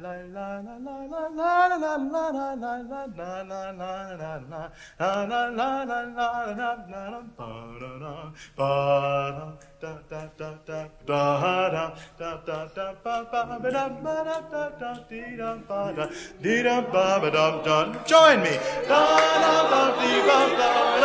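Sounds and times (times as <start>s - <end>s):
person singing melody: 9.4s - 21.0s.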